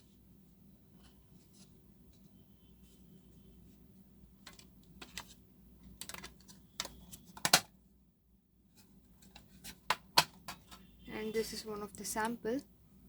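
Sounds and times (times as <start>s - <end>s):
pens clicking and tapping: 4.4s - 7.7s.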